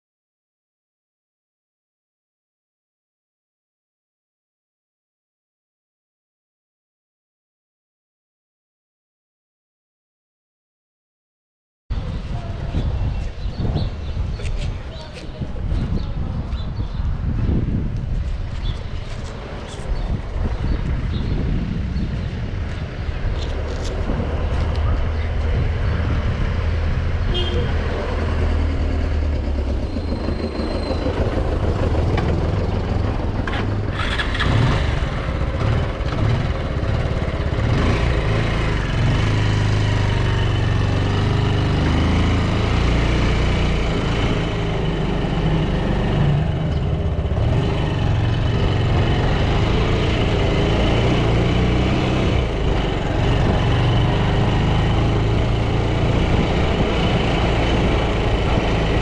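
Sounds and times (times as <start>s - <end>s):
street traffic: 11.9s - 59.0s
motorcycle engine running: 27.3s - 59.0s.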